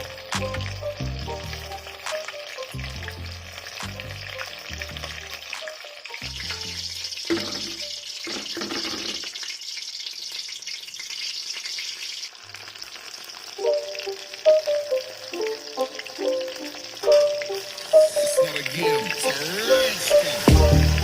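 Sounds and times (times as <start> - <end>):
background music with melody: 0.0 - 8.1, 13.6 - 21.0
food sizzling in hot oil: 0.0 - 21.0.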